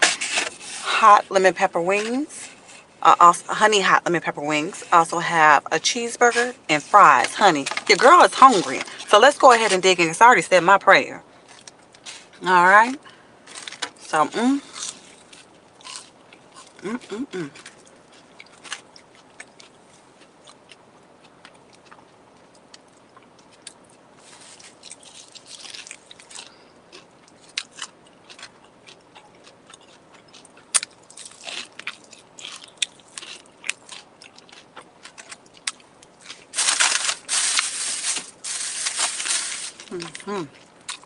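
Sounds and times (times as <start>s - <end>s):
person chewing and crunching: 13.5s - 41.0s.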